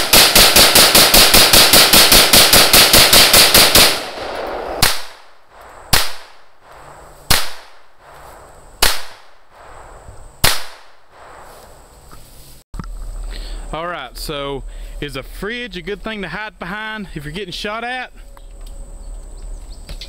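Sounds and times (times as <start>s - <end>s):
gunshots: 0.0s - 8.2s, 8.8s - 11.6s.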